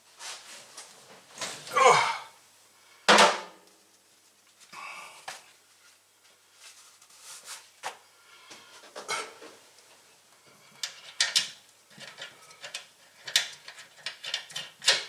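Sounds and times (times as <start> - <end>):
tools knocking and rattling: 11.0 - 15.0.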